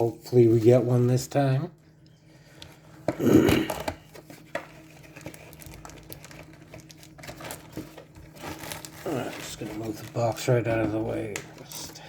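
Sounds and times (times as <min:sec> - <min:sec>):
card packs rustling: 0:02.4 - 0:12.0.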